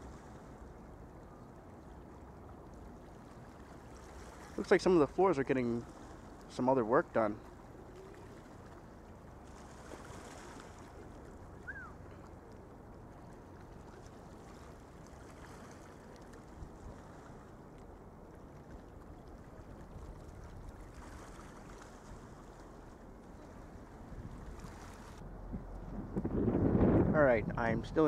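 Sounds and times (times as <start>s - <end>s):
rushing riverfront ambience: 0.0s - 28.0s
short falling chirp: 11.6s - 12.0s.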